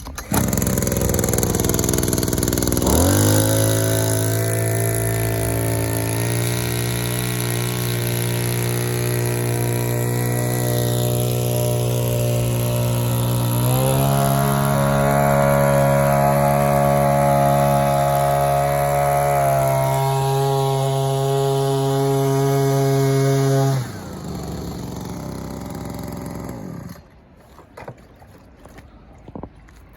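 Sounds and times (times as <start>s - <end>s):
small sprayer engine running: 0.1s - 27.0s.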